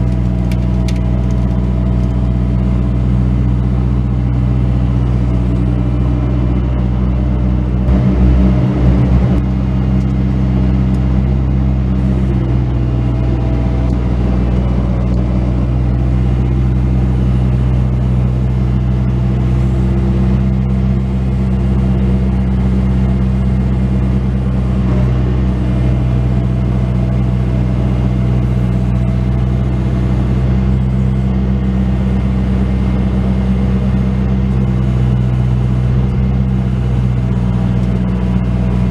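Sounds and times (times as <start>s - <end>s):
skid steer diesel engine running: 0.0s - 38.9s
low thumps: 7.8s - 15.3s.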